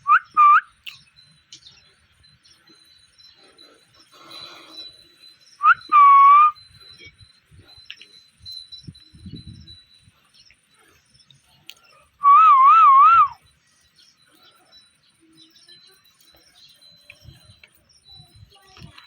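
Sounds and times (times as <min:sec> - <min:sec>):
parrot warbling whistle: 0:00.0 - 0:00.7, 0:05.6 - 0:06.6, 0:12.2 - 0:13.4.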